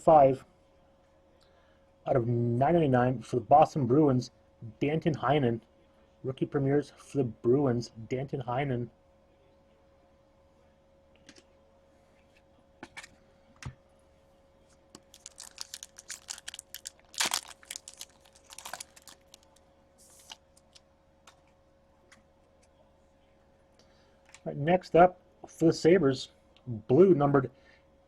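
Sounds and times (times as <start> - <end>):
faint steady hum: 0.0 - 28.0
packaging crinkling and clicks: 15.0 - 21.4.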